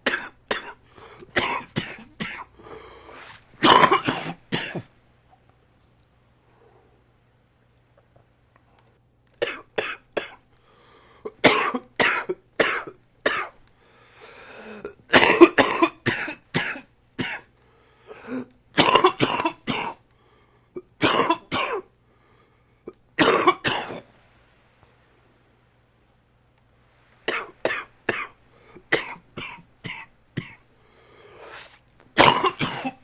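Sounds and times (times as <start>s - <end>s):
man coughing: 0.0s - 2.5s, 3.6s - 4.8s, 11.4s - 13.5s, 14.8s - 17.5s, 20.9s - 21.9s, 23.2s - 24.0s, 27.3s - 30.6s, 32.2s - 33.0s.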